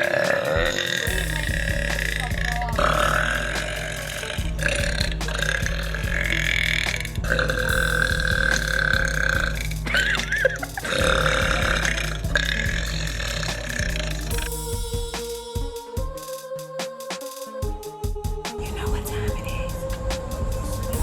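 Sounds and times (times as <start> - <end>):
deep background hum: 0.0 - 15.5.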